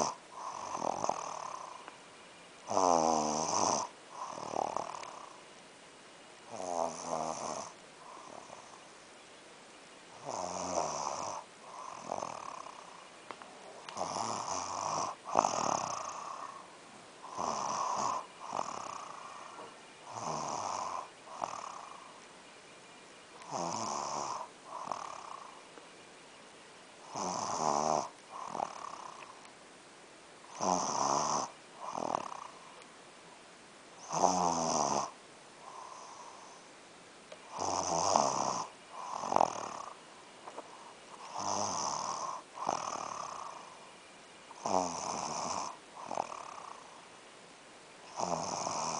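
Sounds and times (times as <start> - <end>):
person snoring: 0.0 - 1.8, 2.7 - 5.4, 6.5 - 8.8, 10.2 - 12.9, 13.9 - 22.1, 23.4 - 25.5, 27.0 - 29.3, 30.5 - 32.7, 34.0 - 36.6, 37.5 - 40.0, 41.2 - 43.7, 44.6 - 46.9, 48.1 - 48.9.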